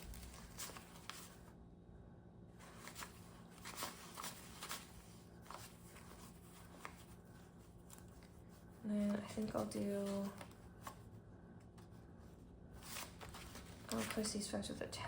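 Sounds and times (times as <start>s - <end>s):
paper banknotes rustling: 0.0s - 1.5s, 2.6s - 11.1s, 12.8s - 14.6s.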